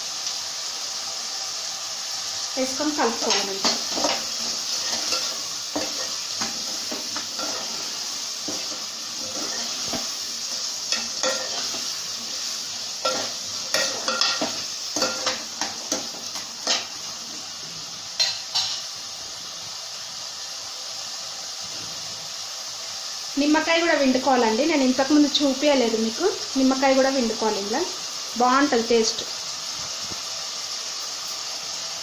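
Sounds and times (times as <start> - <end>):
chickpeas sizzling in oil: 0.0 - 32.0
spoon scraping a pan: 3.0 - 17.0, 18.2 - 18.9.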